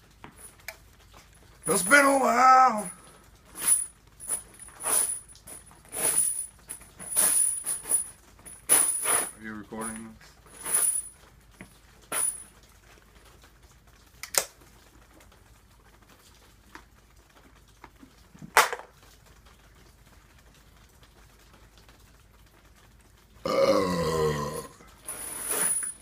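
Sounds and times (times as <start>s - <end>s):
man belching: 23.4s - 24.9s.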